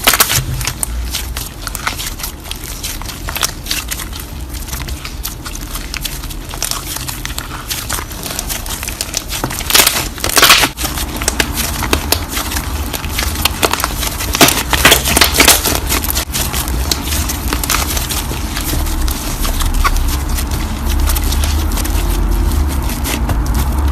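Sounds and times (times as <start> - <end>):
low steady hum: 0.0 - 23.9
slime squishing: 0.0 - 23.9.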